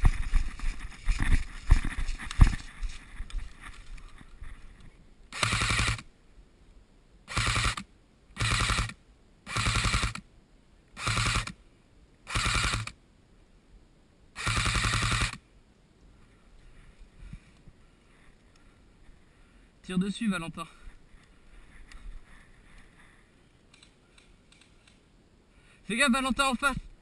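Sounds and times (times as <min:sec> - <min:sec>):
airsoft gun firing bursts: 0:05.3 - 0:06.1, 0:07.3 - 0:10.2, 0:11.0 - 0:11.6, 0:12.3 - 0:13.0, 0:14.4 - 0:15.4.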